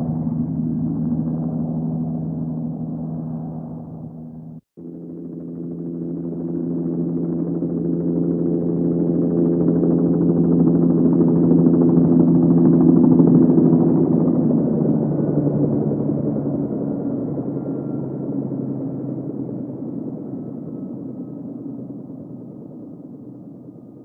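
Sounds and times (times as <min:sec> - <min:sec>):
low droning hum: 0:00.0 - 0:04.6
low steady drone: 0:00.0 - 0:24.0.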